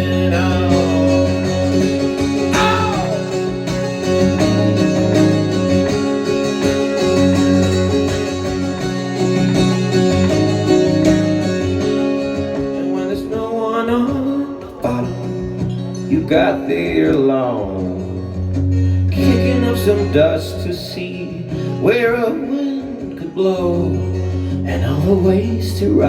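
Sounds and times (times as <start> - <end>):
acoustic guitar playing: 0.0 - 26.0
person singing: 2.5 - 3.5.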